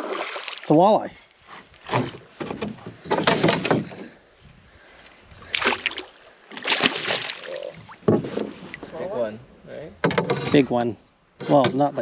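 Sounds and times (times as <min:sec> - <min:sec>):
water splashing: 0:00.0 - 0:00.8, 0:05.4 - 0:08.9
knocking on canoe: 0:08.0 - 0:08.6.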